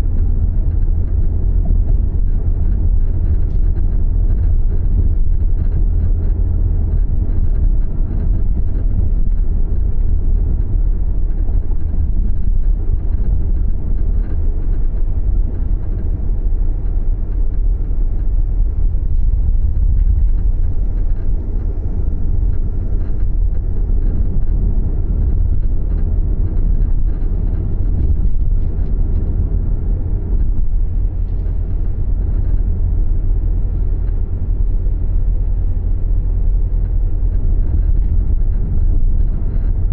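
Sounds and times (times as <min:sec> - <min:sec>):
car low rumble: 0:00.0 - 0:39.9
road noise: 0:00.0 - 0:39.9.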